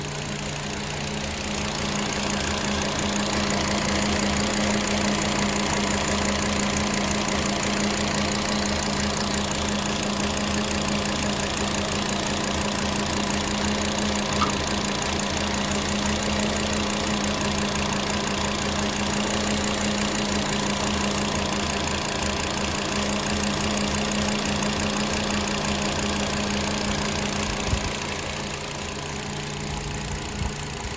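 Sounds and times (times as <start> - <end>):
car engine idling with misfire: 0.0 - 30.9
brief knock: 14.4 - 14.6.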